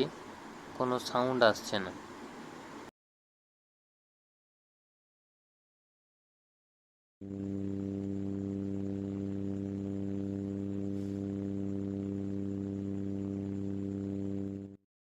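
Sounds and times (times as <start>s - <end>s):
low electrical hum: 0.0s - 2.9s, 7.2s - 14.8s.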